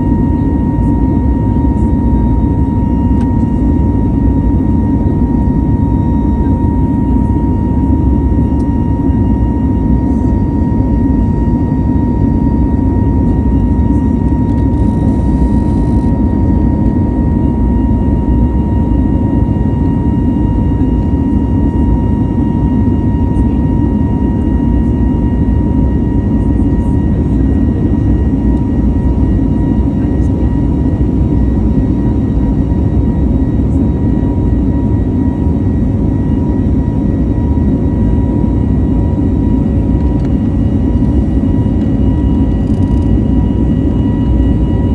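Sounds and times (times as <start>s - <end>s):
jet engine whine: 0.0s - 44.9s
jet engines rushing: 34.1s - 44.9s.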